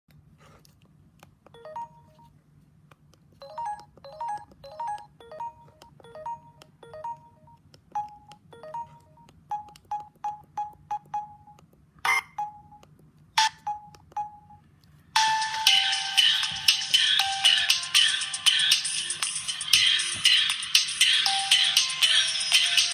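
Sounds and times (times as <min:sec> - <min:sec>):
ringtone melody: 0:01.6 - 0:02.4, 0:03.4 - 0:22.9
quiet electronic beeps: 0:03.4 - 0:14.7.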